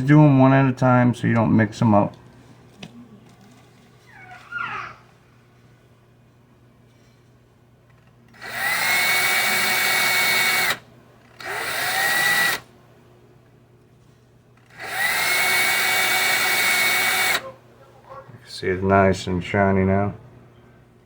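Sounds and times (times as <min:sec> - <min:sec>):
cordless drill whining: 0:08.3 - 0:12.7, 0:14.6 - 0:17.4.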